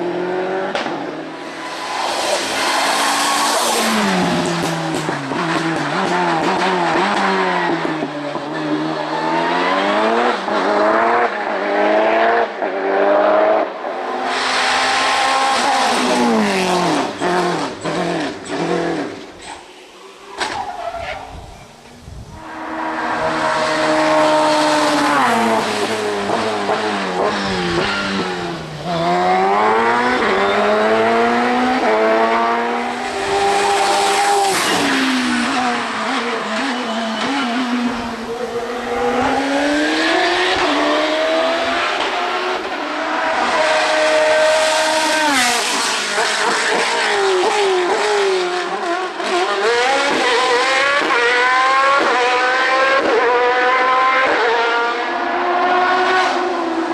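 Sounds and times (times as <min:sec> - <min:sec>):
racing car engine revving: 0:22.4 - 0:56.6.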